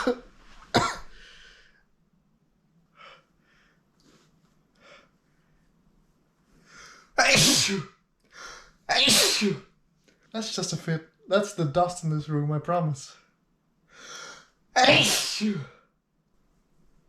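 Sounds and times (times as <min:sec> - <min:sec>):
loud sneeze: 0:07.2 - 0:08.0, 0:08.9 - 0:09.7, 0:14.8 - 0:15.8.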